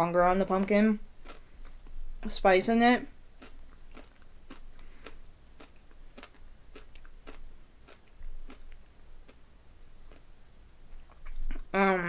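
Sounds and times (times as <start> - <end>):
chewing crunchy candy: 1.2 - 1.8, 3.4 - 9.4.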